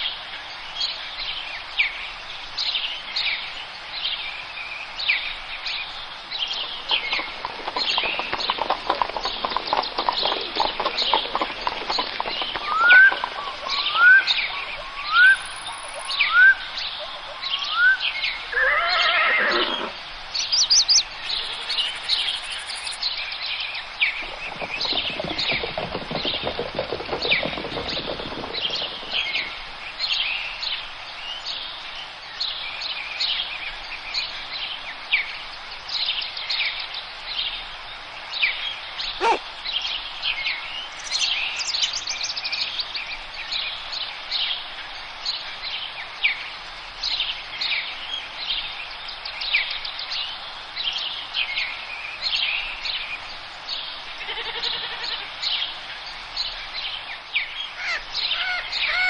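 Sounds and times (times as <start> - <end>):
birds chirping: 5.2 - 31.8, 39.0 - 43.5.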